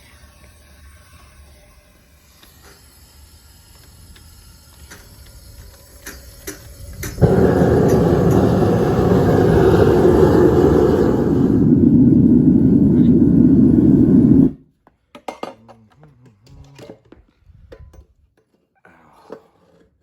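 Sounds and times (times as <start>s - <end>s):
furnace rushing roar: 7.0s - 14.6s.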